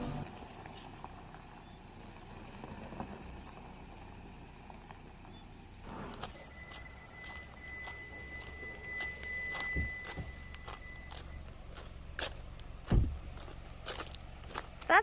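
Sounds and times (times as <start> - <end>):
car rumbling in motion: 0.0 - 15.0
thin steady high tone: 5.9 - 11.7.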